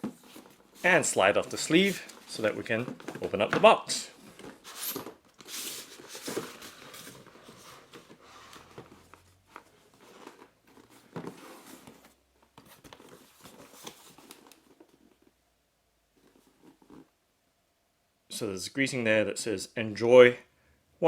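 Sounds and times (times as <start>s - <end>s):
cardboard scraping and rustling: 0.0s - 15.3s.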